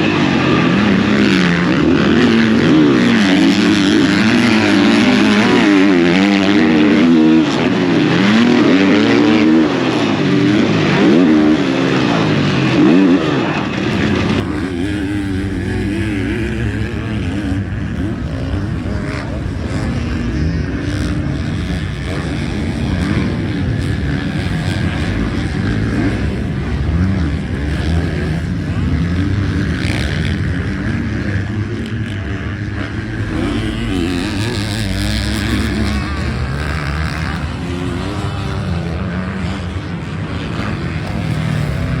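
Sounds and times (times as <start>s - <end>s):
motorbike engine revving: 0.0s - 42.0s.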